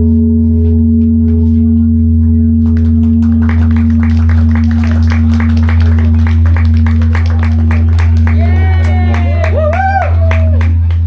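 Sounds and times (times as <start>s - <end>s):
people clapping: 2.2s - 11.0s
bronze bell ringing: 2.8s - 9.3s.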